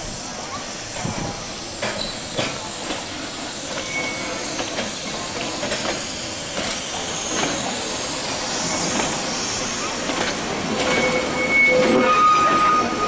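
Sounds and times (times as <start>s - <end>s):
steam locomotive hissing: 0.0s - 13.0s.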